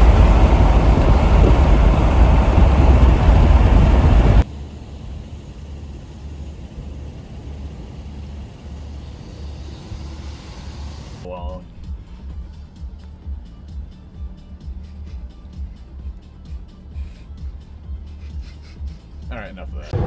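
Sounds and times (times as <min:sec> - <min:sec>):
loud rushing noise: 0:00.0 - 0:05.4
vehicle rumbling on road: 0:00.0 - 0:11.3.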